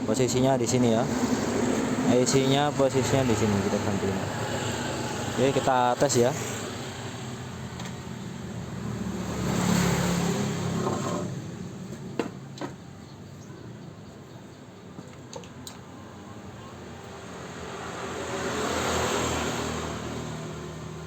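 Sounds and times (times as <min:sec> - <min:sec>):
welder cooling fan whirring: 0:00.0 - 0:08.9.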